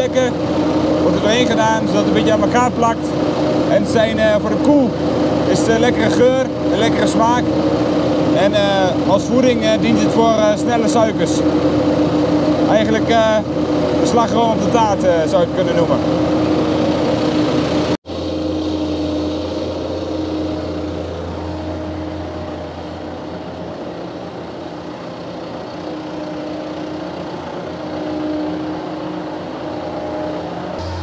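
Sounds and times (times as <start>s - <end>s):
tractor engine running: 0.0s - 31.0s.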